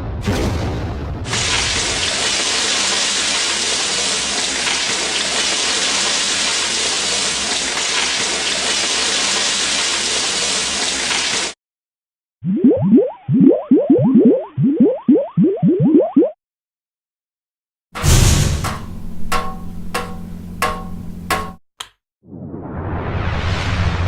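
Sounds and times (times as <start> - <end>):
rain-like patter: 1.3 - 11.6.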